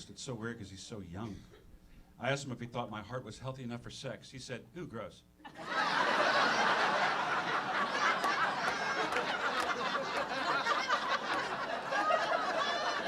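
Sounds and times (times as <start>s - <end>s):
audience laughing: 5.5s - 13.0s.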